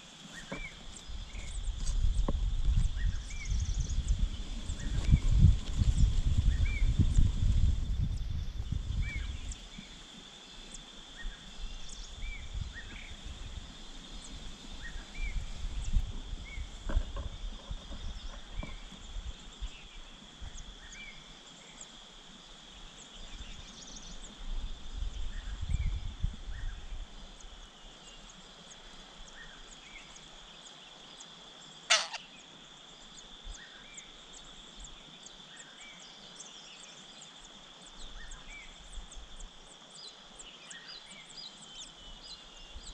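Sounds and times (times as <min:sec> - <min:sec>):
insect drone: 0:00.0 - 0:42.9
bird chirps: 0:31.9 - 0:32.3.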